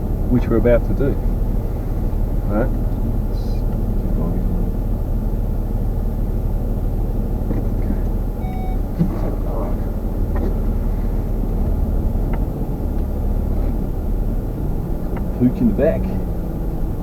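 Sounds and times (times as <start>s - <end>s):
car engine and road noise: 0.0s - 17.0s
faint short tones: 8.4s - 9.0s.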